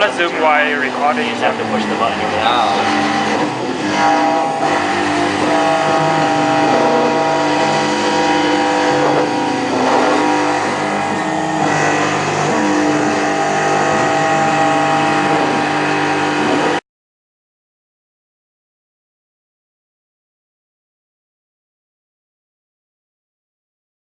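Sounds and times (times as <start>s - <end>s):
milling machine whining: 0.0s - 16.8s.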